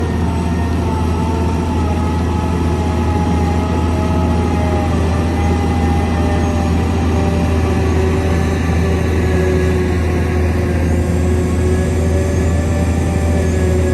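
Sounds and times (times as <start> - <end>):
heavy machine engine humming: 0.0 - 13.9.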